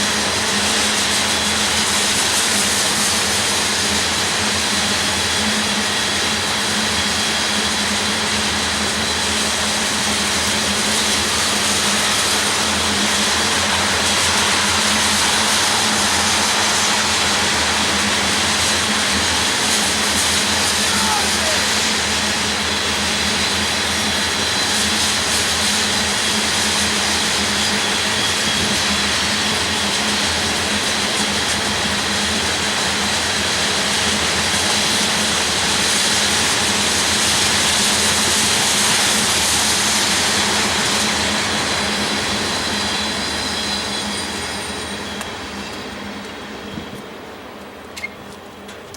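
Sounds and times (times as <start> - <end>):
train wheels rumbling on rail: 0.0 - 48.9.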